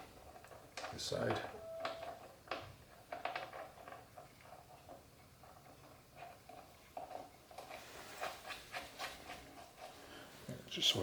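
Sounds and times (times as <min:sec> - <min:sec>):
metal parts clicking and tapping: 0:00.0 - 0:07.8.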